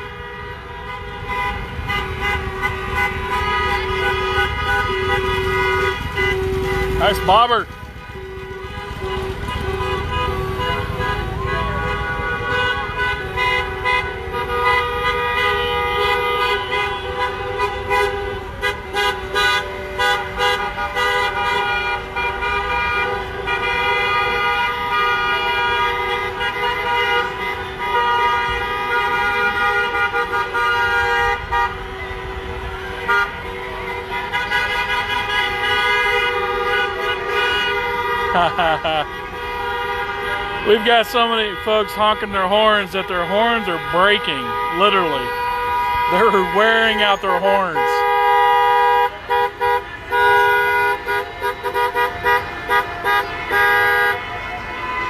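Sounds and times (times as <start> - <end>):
car horns honking: 0.0 - 55.0.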